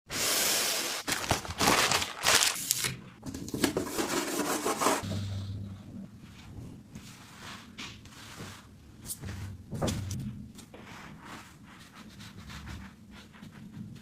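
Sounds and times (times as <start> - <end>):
packaging rustling and scraping: 0.9 - 5.1.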